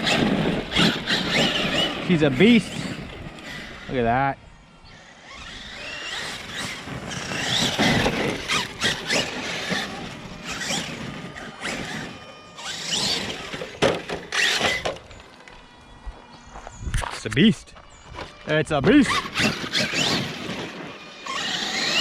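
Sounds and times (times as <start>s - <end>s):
rc truck motor whining: 0.0s - 17.1s, 17.7s - 22.0s
rush of tyres: 5.3s - 14.8s, 19.1s - 22.0s.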